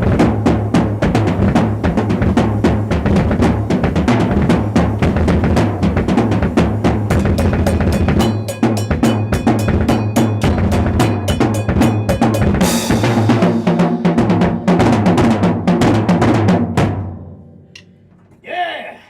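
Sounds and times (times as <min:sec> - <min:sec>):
rapid snare and bass drum: 0:00.0 - 0:17.2
cymbal crash: 0:03.4 - 0:14.8.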